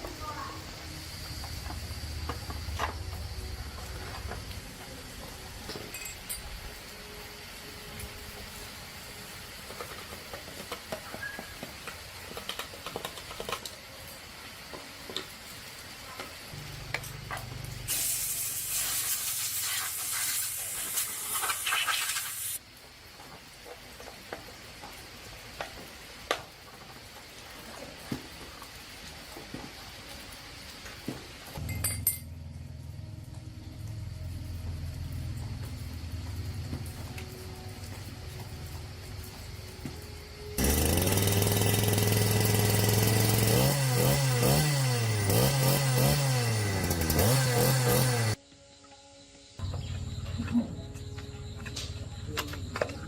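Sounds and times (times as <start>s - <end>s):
metal clinks and knocks: 5.7s - 6.6s, 31.6s - 32.4s
loud hiss: 13.8s - 23.2s.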